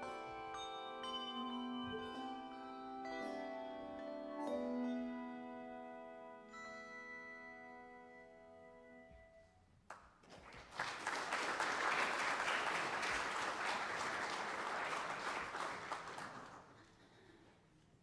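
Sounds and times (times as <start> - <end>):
audience applauding: 9.9 - 17.5.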